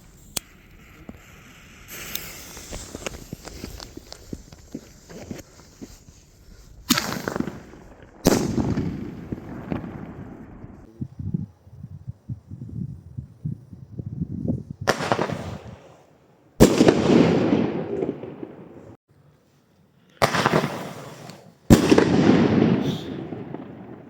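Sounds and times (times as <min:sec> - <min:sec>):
fireworks banging: 0:00.0 - 0:10.9, 0:14.8 - 0:16.0, 0:16.6 - 0:19.0, 0:20.2 - 0:24.0.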